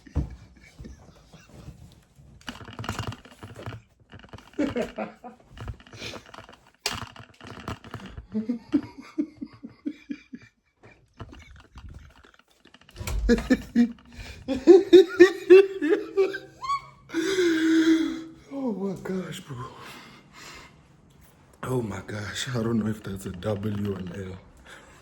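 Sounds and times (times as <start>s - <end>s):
person laughing: 4.5s - 6.2s, 8.2s - 12.3s, 13.1s - 18.4s.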